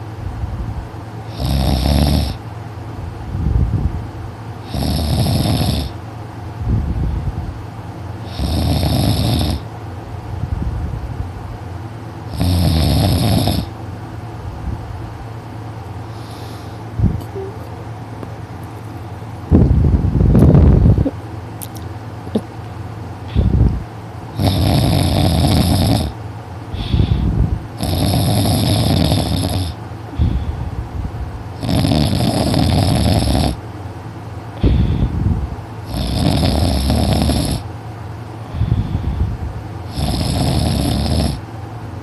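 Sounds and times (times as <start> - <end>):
person snoring loudly: 1.3 - 2.4, 4.6 - 6.0, 8.2 - 9.6, 12.3 - 13.7, 24.4 - 26.2, 26.8 - 30.4, 31.6 - 33.6, 35.8 - 37.7, 39.9 - 41.4
low breath sound: 26.7 - 27.5, 30.1 - 30.8, 34.6 - 35.4, 38.4 - 39.4.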